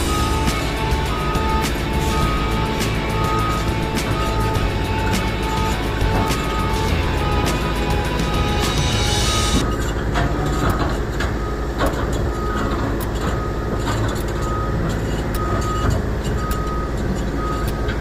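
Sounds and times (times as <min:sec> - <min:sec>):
bulldozer diesel engine running: 0:00.0 - 0:18.0
reversing alarm beeping: 0:00.0 - 0:18.0.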